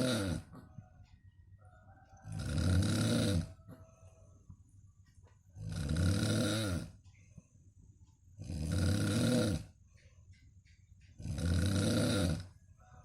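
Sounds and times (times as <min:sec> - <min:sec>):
person snoring: 0:00.0 - 0:00.5, 0:02.2 - 0:03.6, 0:05.6 - 0:07.0, 0:08.4 - 0:09.8, 0:11.2 - 0:12.6.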